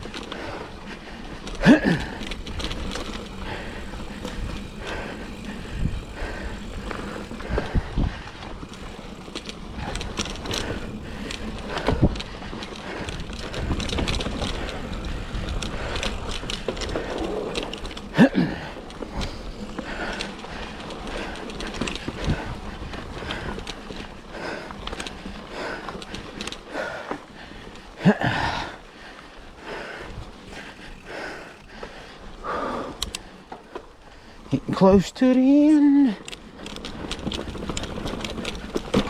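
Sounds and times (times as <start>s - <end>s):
bike tyre noise: 0.0s - 39.0s
wind noise: 1.4s - 26.4s.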